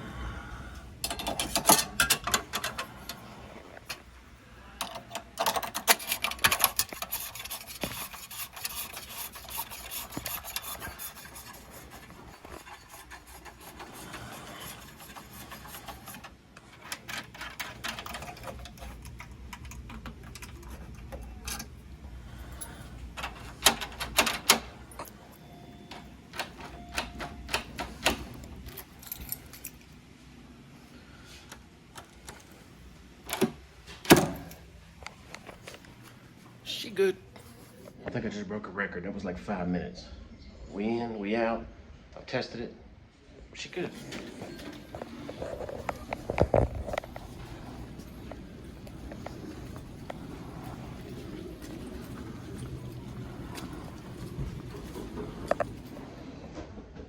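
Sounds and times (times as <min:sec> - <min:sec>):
metal lock parts clicking: 0:01.0 - 0:03.2, 0:04.8 - 0:12.7, 0:14.8 - 0:21.8.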